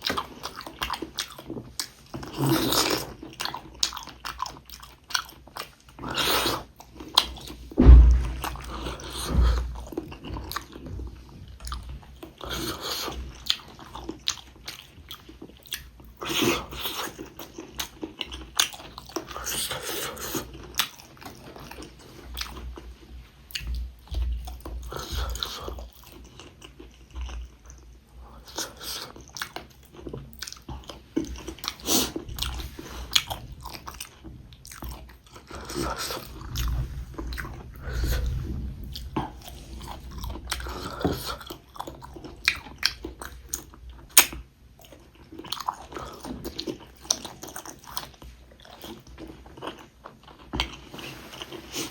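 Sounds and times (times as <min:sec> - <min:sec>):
chewing and crunching: 0:00.0 - 0:51.9
heavy low thumps: 0:07.7 - 0:11.8, 0:36.4 - 0:41.5.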